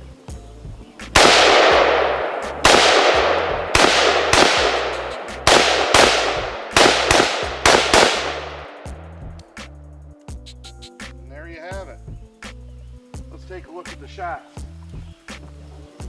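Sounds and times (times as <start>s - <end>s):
rifle shots with echo: 1.2s - 9.1s.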